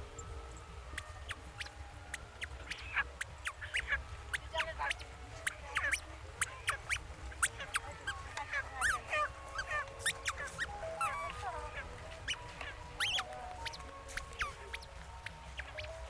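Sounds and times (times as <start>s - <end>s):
small birds chirping: 0.0s - 16.0s.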